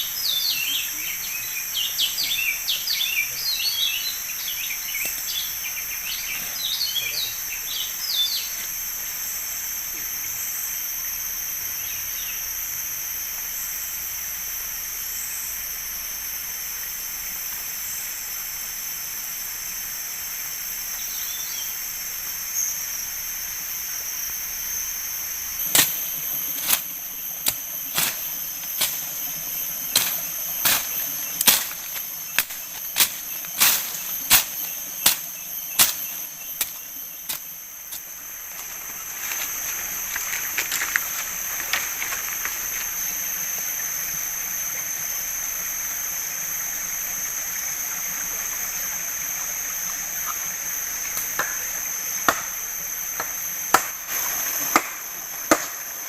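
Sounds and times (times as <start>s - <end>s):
high-pitched insect chorus: 0.0s - 56.0s.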